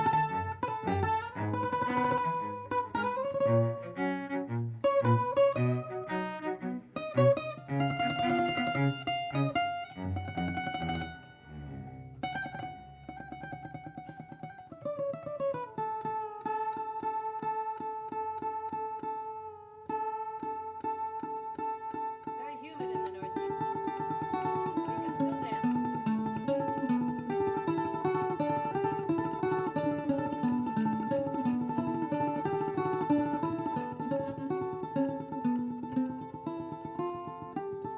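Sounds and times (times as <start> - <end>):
cello playing: 0.0 - 14.3, 22.5 - 37.1
fast picked bandolim notes: 0.0 - 37.9.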